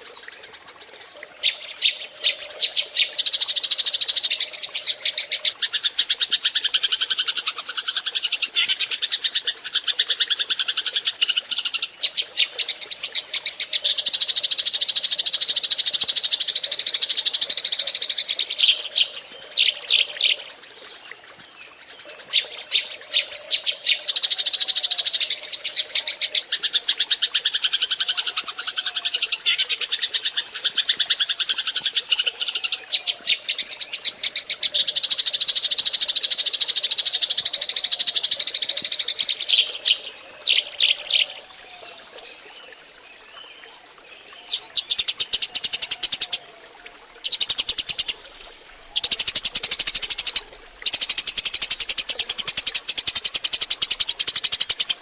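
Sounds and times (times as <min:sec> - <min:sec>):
sparrows chirping and chattering: 0:44.5 - 0:46.4, 0:47.2 - 0:48.2, 0:48.9 - 0:55.0.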